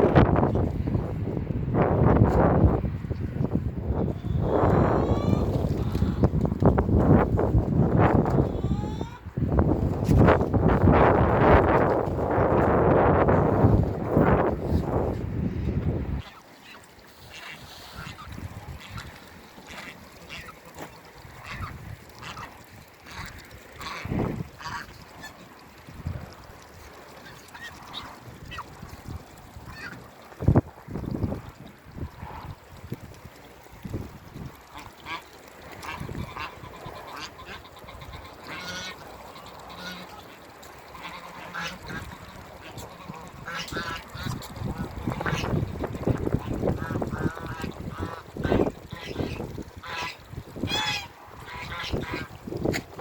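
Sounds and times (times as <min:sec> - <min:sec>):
waterfowl calling: 0:04.1 - 0:06.8, 0:08.1 - 0:09.3, 0:16.2 - 0:25.6, 0:27.1 - 0:28.8, 0:34.7 - 0:52.4.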